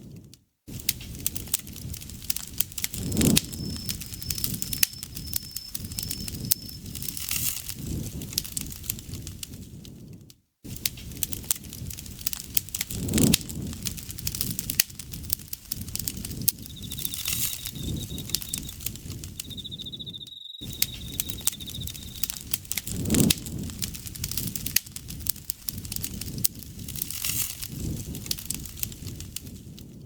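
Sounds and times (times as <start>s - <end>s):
campfire crackling and popping: 0.8s - 9.6s, 10.7s - 29.9s
insect trilling: 2.9s - 7.2s, 15.8s - 22.5s.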